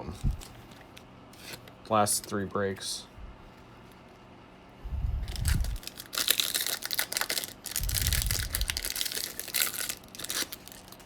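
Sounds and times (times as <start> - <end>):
wrapper tearing and crinkling: 5.3 - 11.0.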